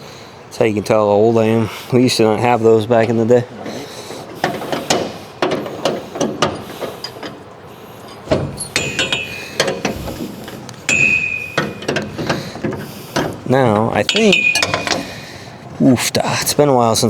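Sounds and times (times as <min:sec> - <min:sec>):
ringing metal clinks: 0:08.1 - 0:10.2, 0:10.9 - 0:12.6, 0:14.0 - 0:15.4
wrench and ratchet on bolts: 0:08.1 - 0:15.4.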